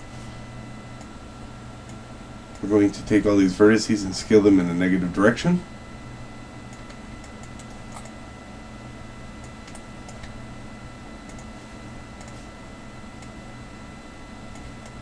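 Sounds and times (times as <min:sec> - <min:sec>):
low electrical hum: 0:00.0 - 0:15.0
thin steady whine: 0:00.0 - 0:15.0
computer mouse and keyboard clicks: 0:06.7 - 0:08.2, 0:09.4 - 0:10.4, 0:11.2 - 0:11.5, 0:12.2 - 0:12.4.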